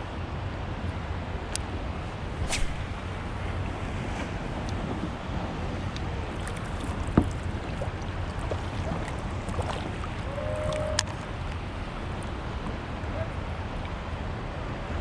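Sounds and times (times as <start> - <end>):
water sloshing against kayak hull: 2.3 - 12.4.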